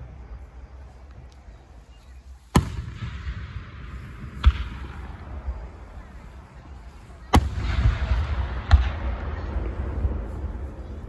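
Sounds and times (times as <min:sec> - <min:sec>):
steady low rumble: 0:00.0 - 0:11.0
fireworks bangs: 0:02.5 - 0:11.0.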